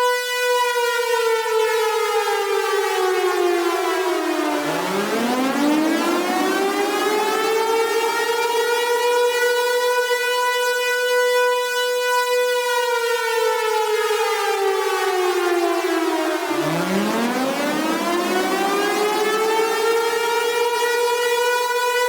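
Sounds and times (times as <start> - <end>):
warning siren wailing: 0.0 - 22.0.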